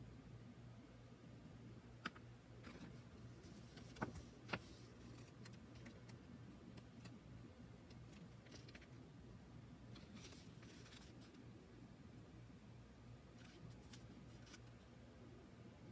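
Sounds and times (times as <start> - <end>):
paper rustling: 2.6 - 6.2, 7.9 - 9.0, 10.0 - 11.4, 13.4 - 14.8.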